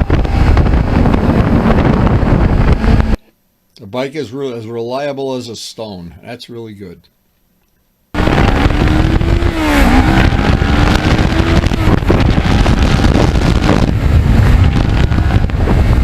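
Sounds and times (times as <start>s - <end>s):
motorcycle engine running: 0.0s - 3.2s, 8.2s - 16.0s
wind rumble on microphone: 0.0s - 3.3s, 8.2s - 16.0s.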